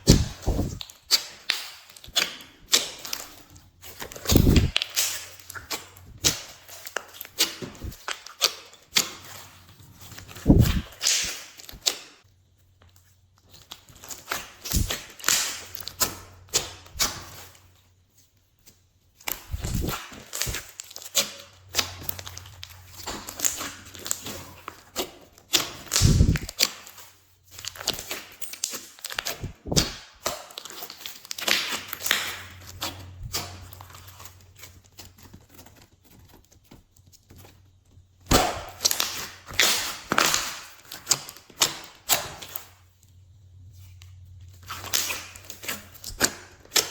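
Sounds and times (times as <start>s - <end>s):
slime squished by hand: 0.0s - 12.2s, 19.2s - 34.7s.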